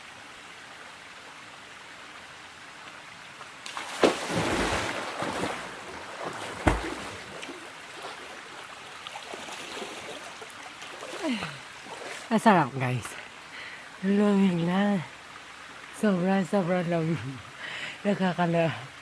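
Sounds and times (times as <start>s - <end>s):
stream water running: 0.0s - 19.0s
loud splashing: 3.7s - 8.4s.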